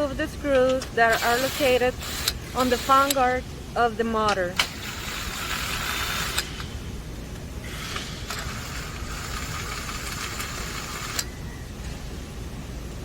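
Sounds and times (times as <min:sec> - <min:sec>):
power drill whirring: 0:01.1 - 0:03.1, 0:04.6 - 0:06.6, 0:07.7 - 0:11.3.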